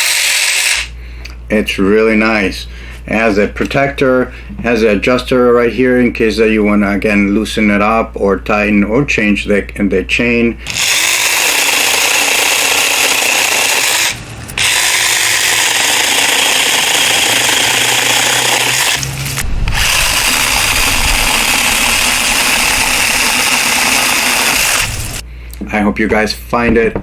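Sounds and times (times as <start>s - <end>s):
mini chainsaw running: 0.0s - 0.9s, 10.7s - 25.2s.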